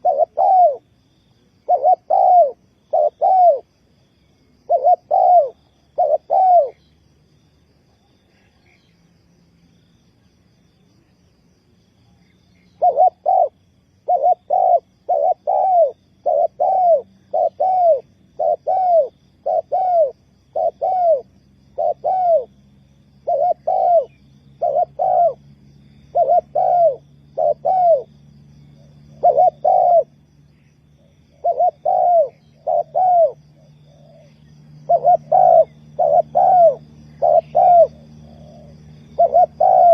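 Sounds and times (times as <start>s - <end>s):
dove cooing: 0.0s - 1.0s, 1.6s - 3.7s, 4.6s - 6.8s, 12.6s - 22.6s, 23.2s - 25.4s, 26.0s - 39.9s.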